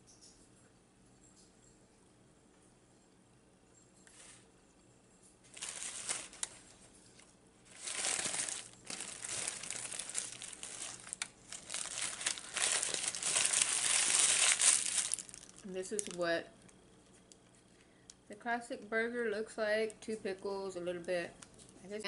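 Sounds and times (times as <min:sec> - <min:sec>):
paper wrapper crinkling: 0:05.5 - 0:16.3.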